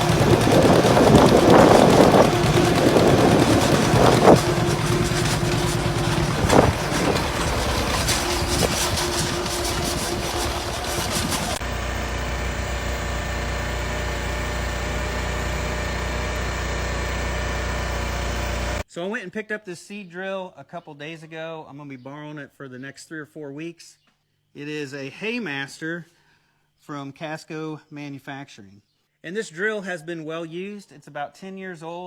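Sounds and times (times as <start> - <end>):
wind on microphone: 0.0 - 11.6
tractor engine idling: 0.0 - 18.8.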